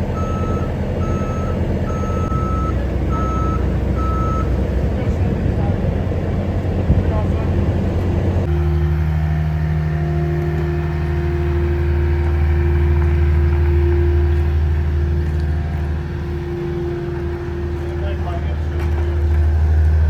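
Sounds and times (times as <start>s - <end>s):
engine droning steadily: 0.0s - 20.0s.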